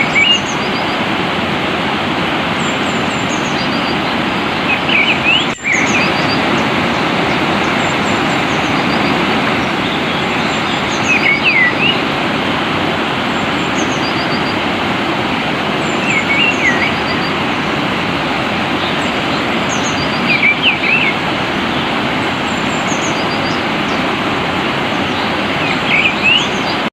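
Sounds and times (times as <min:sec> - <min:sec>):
bird singing whistled phrases: 0:00.0 - 0:00.7, 0:04.7 - 0:06.4, 0:09.8 - 0:12.0, 0:25.6 - 0:26.6
water rushing: 0:00.0 - 0:26.9.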